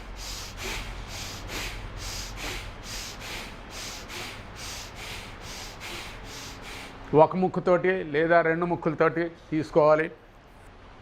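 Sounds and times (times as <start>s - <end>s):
man breathing forcefully through nose: 0.0s - 7.1s.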